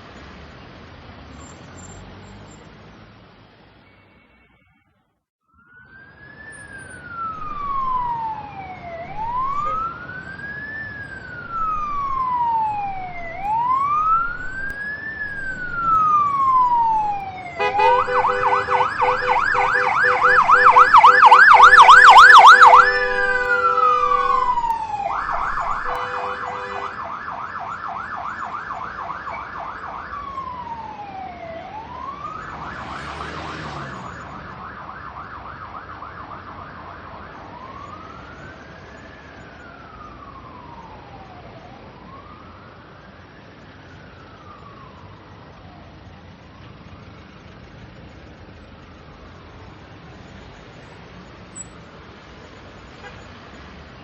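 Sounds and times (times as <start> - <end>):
ambulance siren wailing and yelping: 5.5 - 47.4
steady blaring horn tone: 9.1 - 9.9, 17.0 - 27.1.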